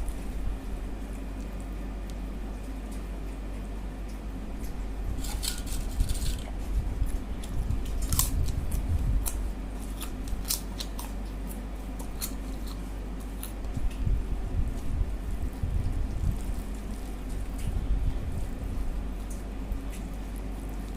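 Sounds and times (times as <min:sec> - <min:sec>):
low steady hum: 0:00.0 - 0:20.9
person chewing food: 0:04.1 - 0:14.1.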